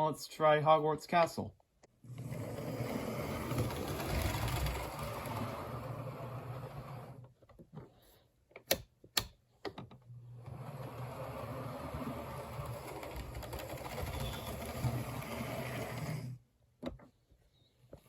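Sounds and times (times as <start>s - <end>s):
model train motor whirring: 2.1s - 7.2s, 10.5s - 16.4s.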